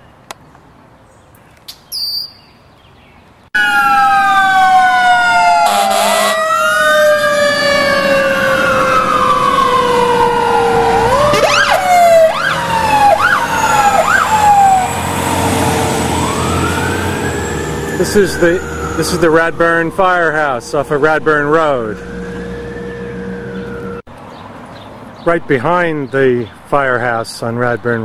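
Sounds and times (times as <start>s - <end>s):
blackbird high falling calls: 1.0s - 3.5s
fire engine sirens wailing: 3.6s - 24.1s.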